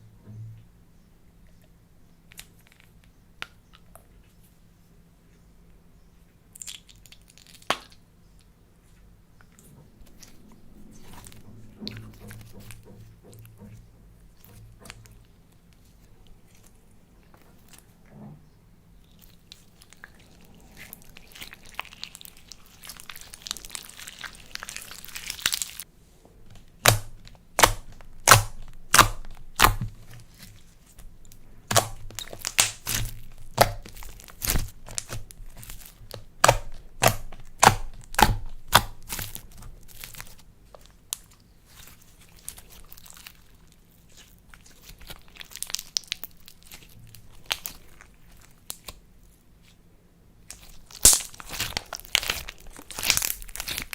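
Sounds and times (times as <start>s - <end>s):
slime kneaded and squeezed: 19.0s - 25.9s, 26.6s - 49.8s, 50.4s - 53.9s
sharp slime pops and snaps: 26.7s - 40.4s, 50.5s - 53.9s.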